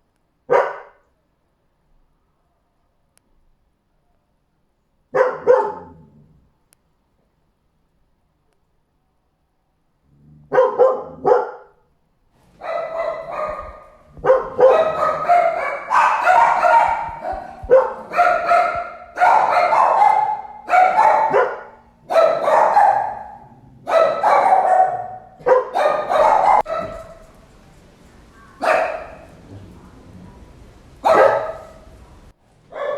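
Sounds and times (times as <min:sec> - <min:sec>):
dog barking: 0:00.5 - 0:01.1, 0:05.1 - 0:06.0, 0:10.5 - 0:11.8, 0:12.5 - 0:32.9.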